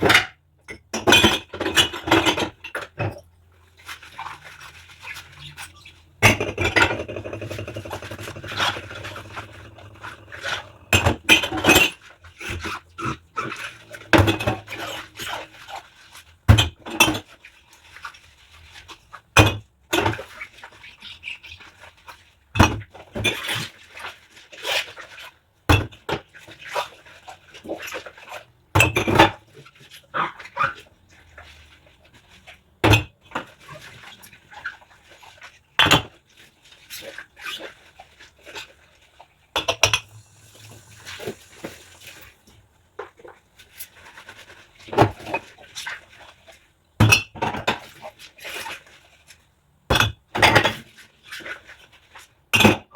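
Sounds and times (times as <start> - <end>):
rubber gloves squeaking on dishes: 5.0 - 11.9.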